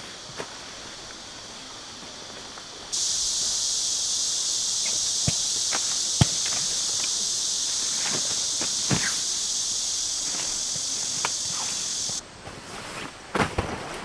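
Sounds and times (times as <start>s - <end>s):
crickets and insects chirping: 0.0s - 14.0s
sharp taps and knocks: 4.8s - 9.3s.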